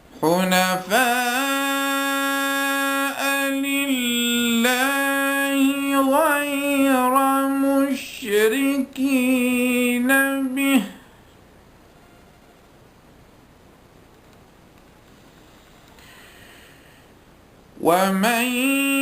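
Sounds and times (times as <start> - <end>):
man reciting melodically: 0.0 - 11.2, 17.8 - 19.0.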